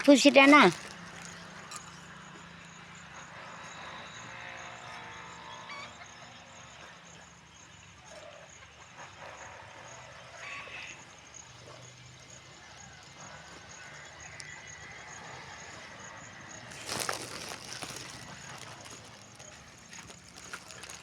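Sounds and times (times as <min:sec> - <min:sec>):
faint distant sounds: 0:16.5 - 0:21.0.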